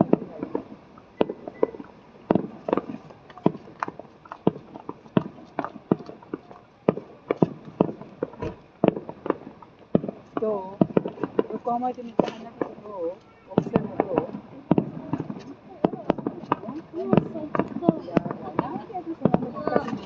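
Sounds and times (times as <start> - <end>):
fireworks bangs and crackling: 0.0 - 20.0.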